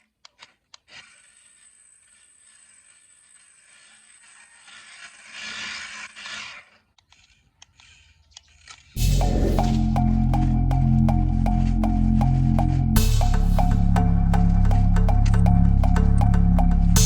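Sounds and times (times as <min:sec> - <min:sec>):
music with a beat: 0:09.0 - 0:17.0.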